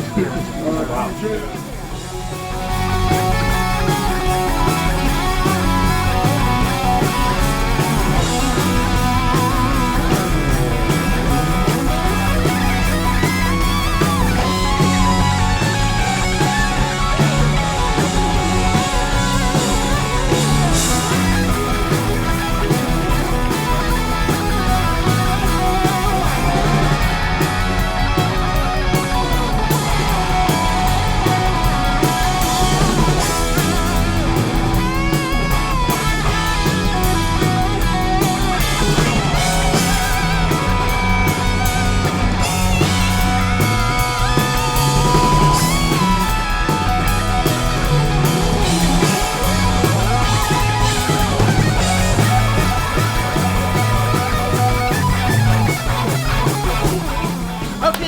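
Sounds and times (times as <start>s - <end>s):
bass guitar: 0.0s - 58.0s
distorted electric guitars: 0.0s - 58.0s
drum kit: 0.0s - 58.0s.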